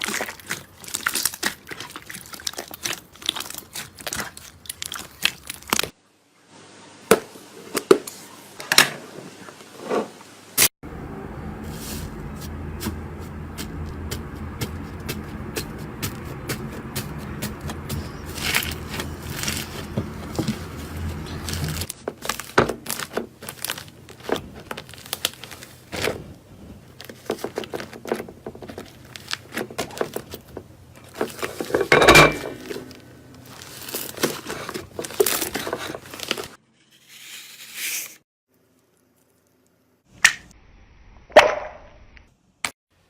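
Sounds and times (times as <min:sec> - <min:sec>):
slime clicking and crackling: 0:00.0 - 0:05.9.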